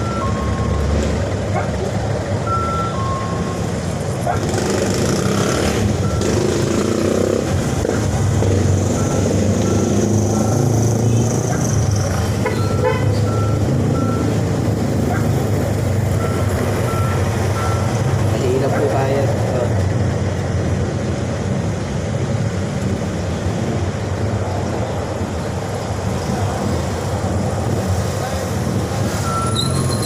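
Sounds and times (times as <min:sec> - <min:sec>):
vehicle engine rumbling: 0:00.0 - 0:30.0
short high beeps: 0:02.4 - 0:03.7, 0:12.5 - 0:14.4, 0:16.2 - 0:18.1, 0:29.2 - 0:30.0.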